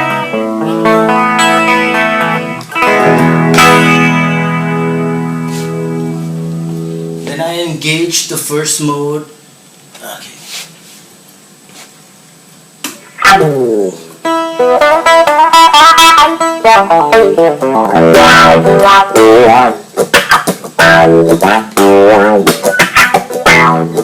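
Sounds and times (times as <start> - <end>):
electric guitar with wah sweeps: 0.0 - 7.3, 13.0 - 24.0.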